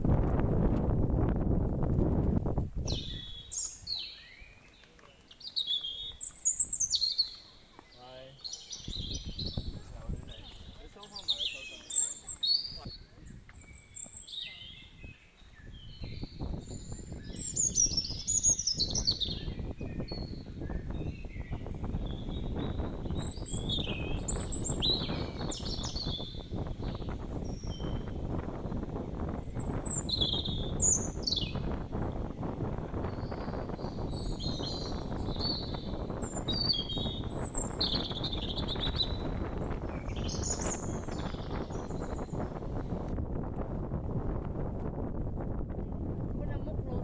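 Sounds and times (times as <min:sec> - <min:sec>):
constant low rumbling: 0:00.0 - 0:03.5, 0:19.0 - 0:47.0
birds singing: 0:02.8 - 0:43.0.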